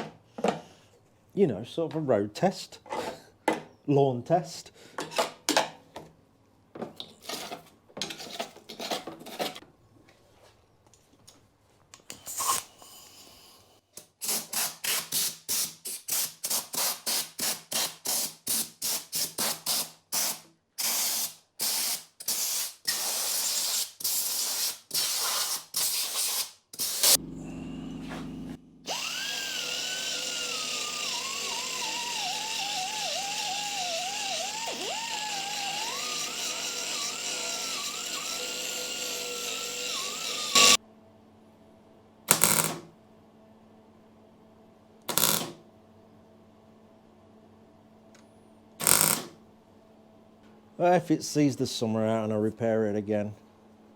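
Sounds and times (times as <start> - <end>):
power tool working metal: 26.8 - 40.8.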